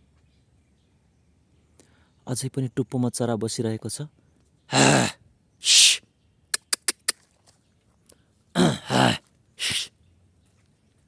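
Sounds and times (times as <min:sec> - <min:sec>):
quick sharp clicks: 0:06.6 - 0:07.2
man's cough-like throat sounds: 0:08.6 - 0:09.8.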